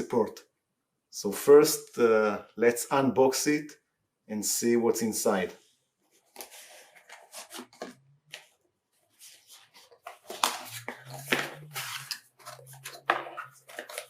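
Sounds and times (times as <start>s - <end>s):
cardboard packaging rustling: 6.1s - 14.0s.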